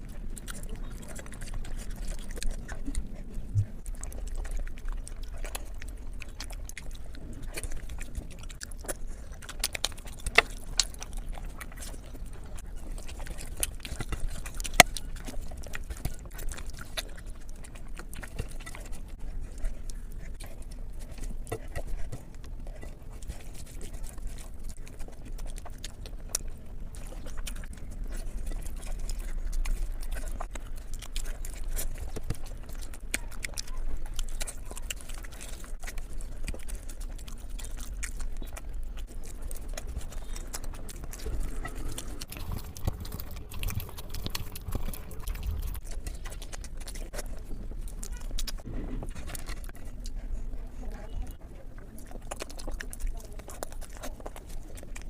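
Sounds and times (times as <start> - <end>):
chewing and mouth clicks: 0.0 - 55.0
low steady hum: 0.0 - 55.0.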